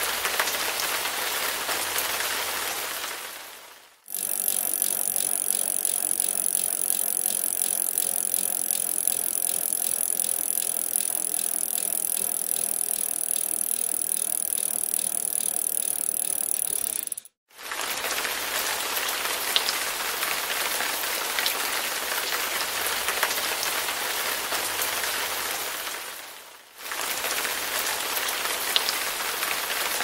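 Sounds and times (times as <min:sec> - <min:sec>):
rapid mechanical clicking: 0:04.1 - 0:17.4.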